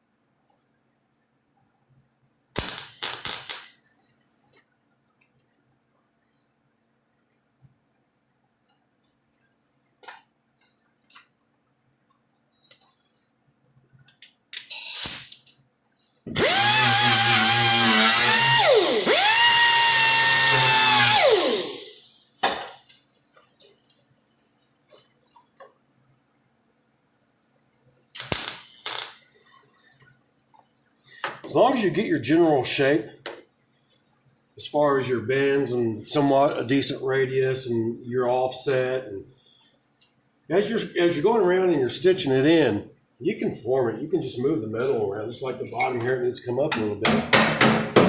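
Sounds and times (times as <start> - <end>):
crackling bursts: 2.6 - 4.0, 28.1 - 30.0
handheld power tool whirring: 16.3 - 22.1, 28.2 - 30.0.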